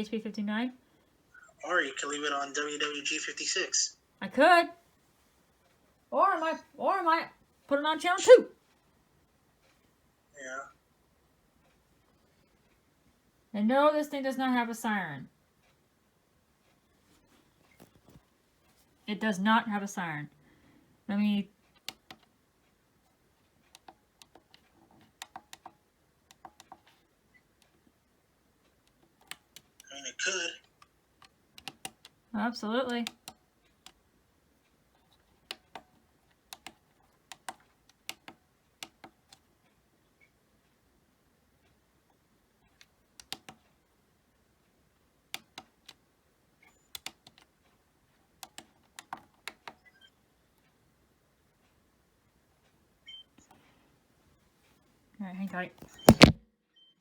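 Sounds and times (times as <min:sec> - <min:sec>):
radio buttons clicking: 0:55.8 - 0:56.4.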